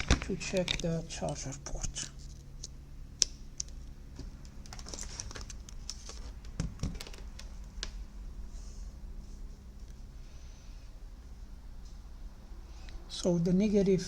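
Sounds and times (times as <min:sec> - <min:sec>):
tools and parts clicking: 0:00.0 - 0:01.4
faint steady low hum: 0:00.0 - 0:14.0.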